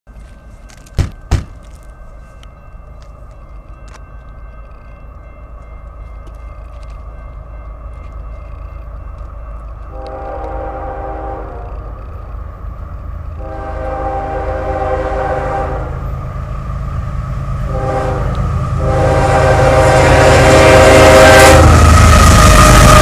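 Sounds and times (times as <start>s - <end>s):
train rumble: 0.1s - 23.0s
train horn blasts: 9.9s - 12.1s, 13.4s - 16.2s, 17.6s - 23.0s.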